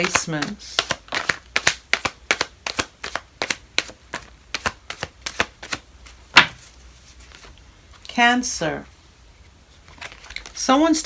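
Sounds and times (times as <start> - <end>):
card slaps: 0.0 - 5.8, 6.4 - 6.6
cards being shuffled: 0.0 - 7.6, 9.8 - 10.7.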